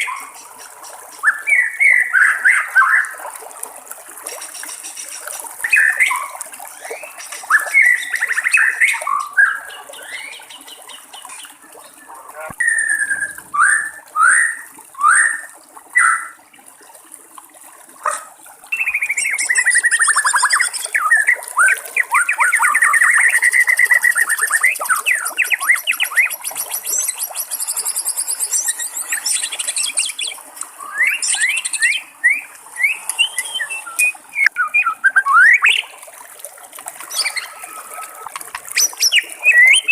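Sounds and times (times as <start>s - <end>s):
trickling water hiss: 0.0s - 39.9s
bird singing whistled phrases: 1.2s - 3.1s, 5.7s - 10.7s, 12.5s - 16.4s, 18.7s - 35.9s, 37.1s - 38.2s, 38.8s - 39.9s.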